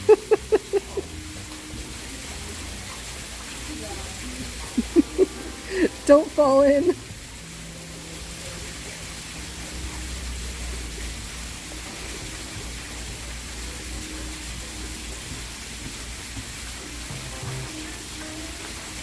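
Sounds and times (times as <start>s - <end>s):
running water: 0.0s - 19.0s.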